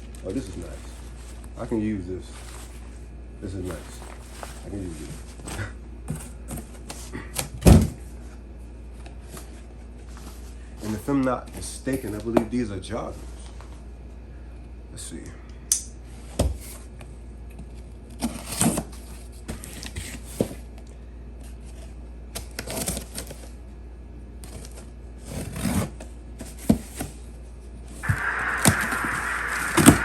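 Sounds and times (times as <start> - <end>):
steady hiss: 28.0 - 30.0.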